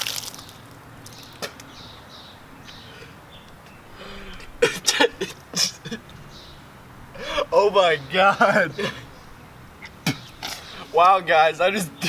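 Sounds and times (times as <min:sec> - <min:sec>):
man retching and coughing: 0:04.6 - 0:06.2, 0:07.2 - 0:07.6, 0:08.3 - 0:09.1, 0:09.8 - 0:10.5.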